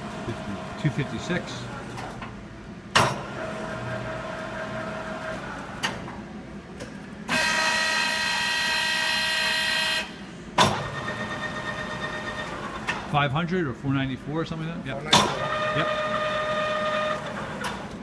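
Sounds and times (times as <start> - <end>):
many-toned machine whine: 7.2 - 18.0
lathe running: 14.7 - 18.0.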